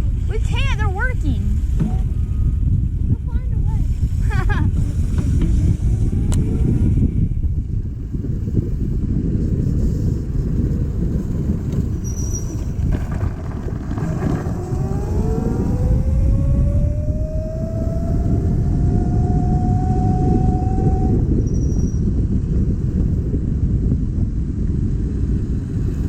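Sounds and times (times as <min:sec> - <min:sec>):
wind rumble on microphone: 0:00.0 - 0:26.0
scooter engine whine rising: 0:04.3 - 0:26.0.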